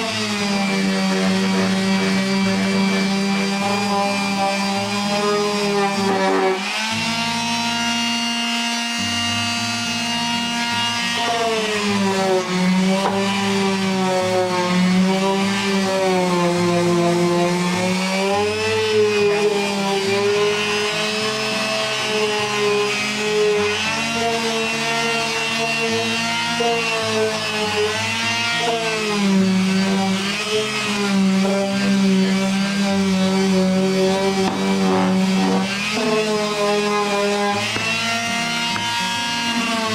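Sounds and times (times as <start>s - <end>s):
palm sander on wood: 0.0s - 39.9s.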